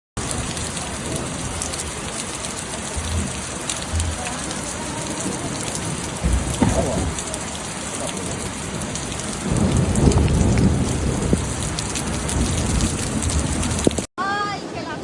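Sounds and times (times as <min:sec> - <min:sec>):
torrential rain pouring: 0:00.2 - 0:15.0
low rumble: 0:02.7 - 0:07.5.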